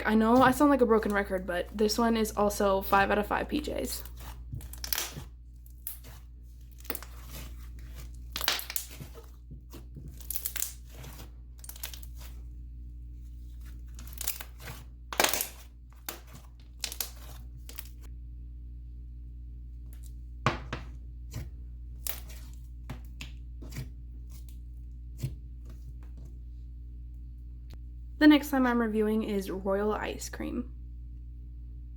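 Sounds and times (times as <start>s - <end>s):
slime squishing and popping: 4.6s - 12.4s.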